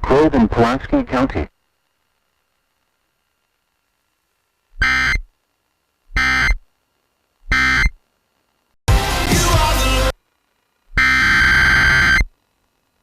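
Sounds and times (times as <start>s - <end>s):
noisy hiss: 0.0s - 13.0s
buzzy digital data bursts: 4.7s - 5.3s, 6.1s - 6.8s, 7.4s - 8.1s, 9.4s - 12.6s.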